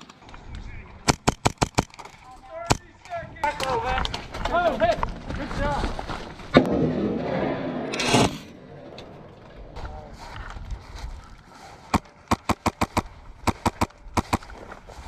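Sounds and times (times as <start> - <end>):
airsoft gun shots: 1.1 - 2.0, 11.9 - 14.5.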